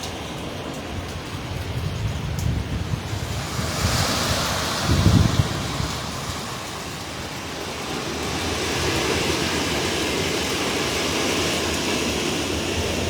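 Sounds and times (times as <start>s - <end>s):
strong wind buffeting microphone: 1.0s - 7.4s.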